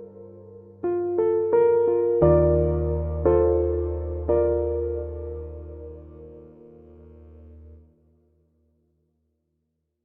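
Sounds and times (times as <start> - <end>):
soft piano chord: 0.0 - 7.8.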